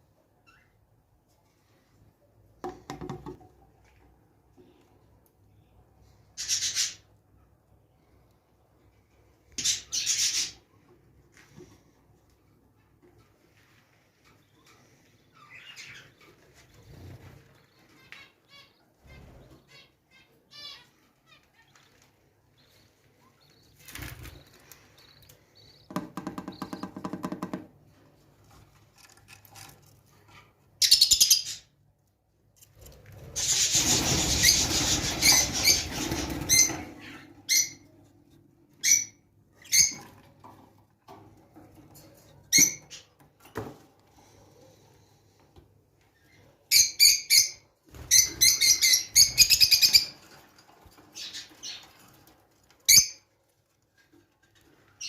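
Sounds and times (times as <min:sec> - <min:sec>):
birds chirping: 0:14.3 - 0:27.5
wings flapping: 0:33.3 - 0:37.2.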